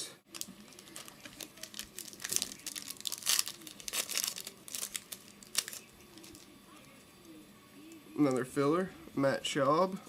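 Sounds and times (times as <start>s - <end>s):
plastic wrapper crinkling and tearing: 0.3s - 6.5s.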